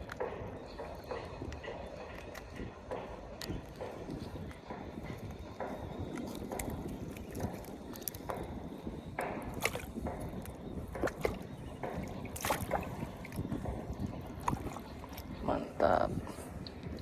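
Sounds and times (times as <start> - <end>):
sea water lapping on rocks: 5.0 - 17.0.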